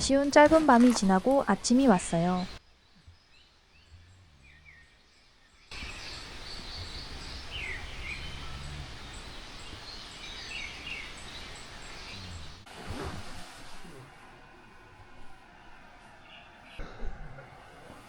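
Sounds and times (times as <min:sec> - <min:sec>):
background hiss: 0:00.0 - 0:18.0
birds chirping: 0:00.0 - 0:18.0.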